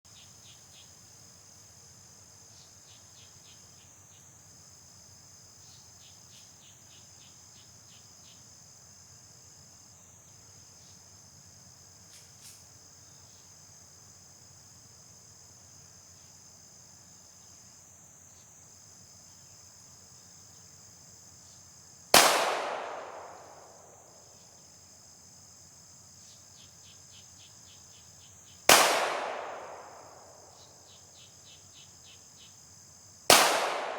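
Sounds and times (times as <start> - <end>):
pistol shots with echo: 22.2 - 23.8, 28.7 - 30.5, 33.3 - 33.9.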